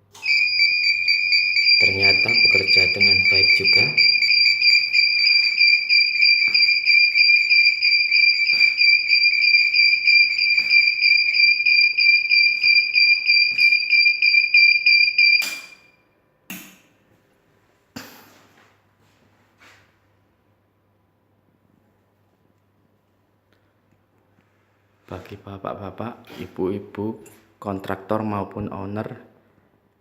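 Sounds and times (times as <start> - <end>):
high-pitched pulsing gas alarm: 0.2 - 16.0.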